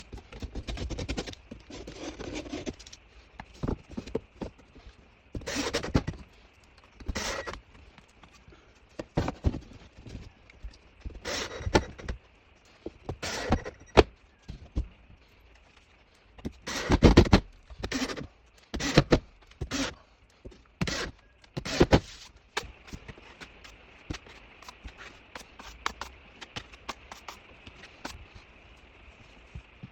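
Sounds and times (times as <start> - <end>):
hand tools scraping drywall: 5.4 - 6.1, 7.1 - 7.6, 16.6 - 20.0, 20.8 - 28.2.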